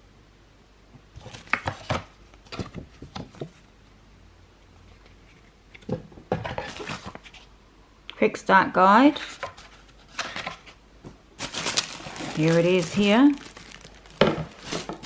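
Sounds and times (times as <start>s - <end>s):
cardboard box packaging rustling: 6.4s - 7.5s, 9.2s - 10.8s, 11.4s - 15.0s.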